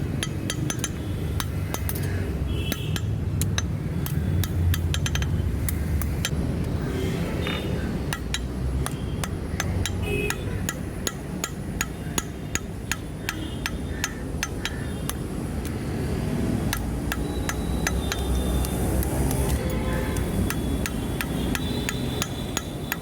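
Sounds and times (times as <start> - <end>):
hammer striking steel on anvil: 0.2 - 2.1, 2.7 - 5.4, 8.1 - 15.2.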